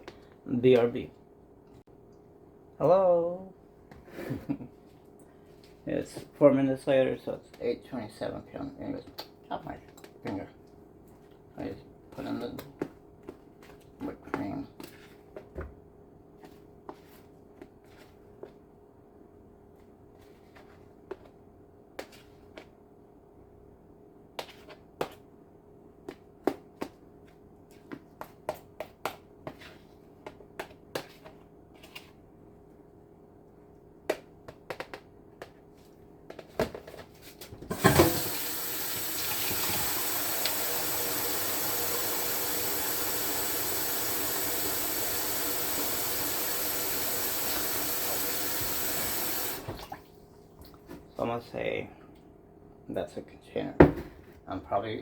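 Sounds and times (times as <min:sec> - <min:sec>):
water running into sink: 0:37.7 - 0:50.1.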